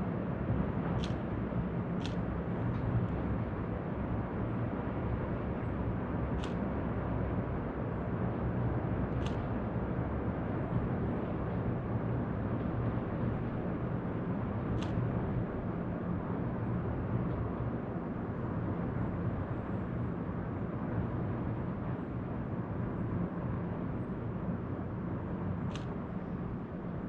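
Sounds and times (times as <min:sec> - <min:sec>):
low rumbling outdoor ambient noise: 0:00.0 - 0:27.0.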